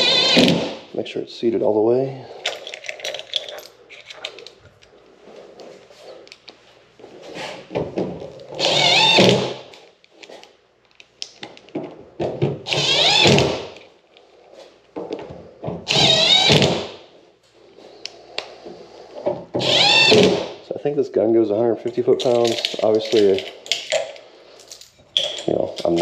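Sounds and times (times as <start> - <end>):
impact gun driving screws: 0.0 - 0.8, 8.6 - 9.7, 12.6 - 13.8, 15.8 - 17.0, 19.6 - 20.6
clicks and knocks of parts: 2.4 - 4.9, 21.9 - 26.0.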